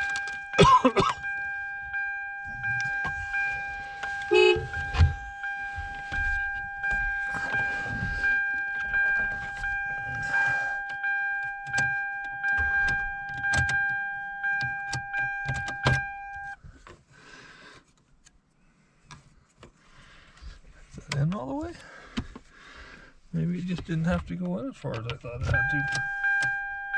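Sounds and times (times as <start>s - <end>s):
car warning buzzer tone: 0.0s - 16.6s, 25.0s - 26.9s
key and ignition switch clicks: 10.8s - 16.6s, 23.7s - 26.7s.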